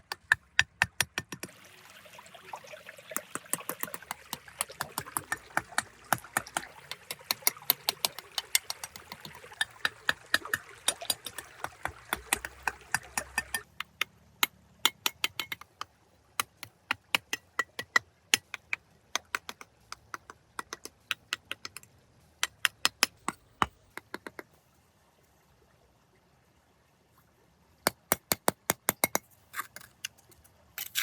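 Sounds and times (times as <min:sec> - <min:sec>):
water trickling: 0:01.4 - 0:13.8
sharp quick clicks and taps: 0:16.4 - 0:24.5.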